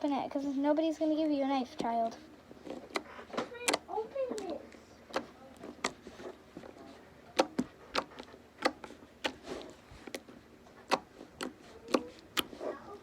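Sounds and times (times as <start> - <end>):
slime clicking pops: 2.6 - 3.8, 5.1 - 6.3, 7.3 - 12.6.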